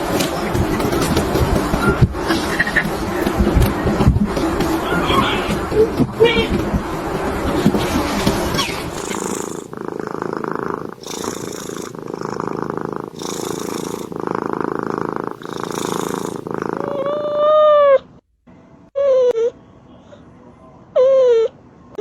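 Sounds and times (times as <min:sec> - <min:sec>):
cat purring: 0:00.0 - 0:17.7
cat meowing: 0:16.8 - 0:18.1.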